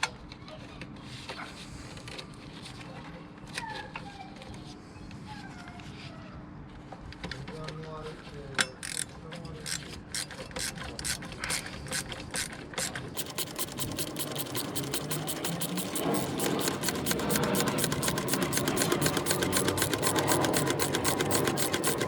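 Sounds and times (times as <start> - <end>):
ratchet wrench clicking: 13.2 - 22.0.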